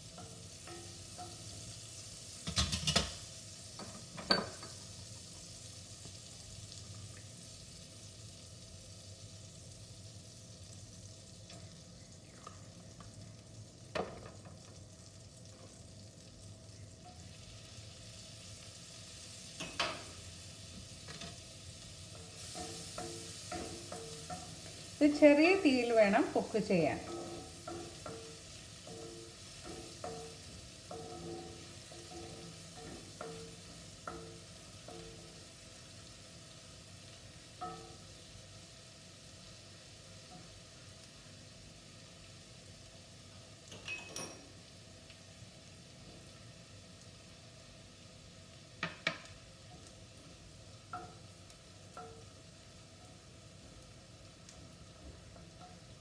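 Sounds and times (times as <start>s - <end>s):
food sizzling in a pan: 0.0s - 56.0s
spatula scraping a pan: 21.0s - 25.4s.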